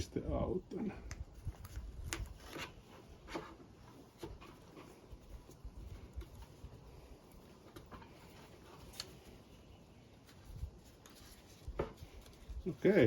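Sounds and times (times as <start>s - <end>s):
mosquito repeller being handled: 1.0s - 13.0s.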